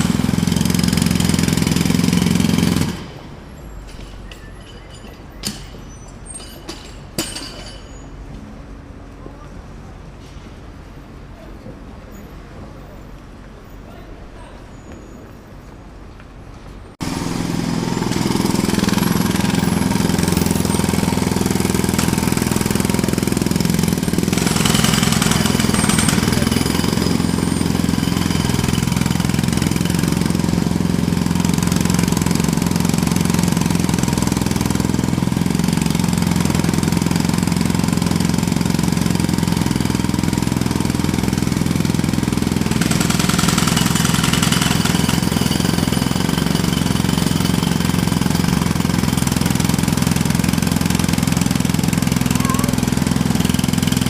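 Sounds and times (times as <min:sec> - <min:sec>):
jackhammer hammering: 0:00.0 - 0:08.0, 0:17.0 - 0:54.0.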